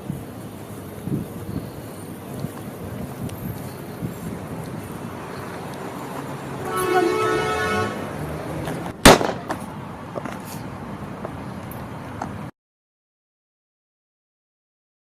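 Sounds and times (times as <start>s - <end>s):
horn toot: 6.6s - 8.1s
sharp bang: 9.0s - 9.6s.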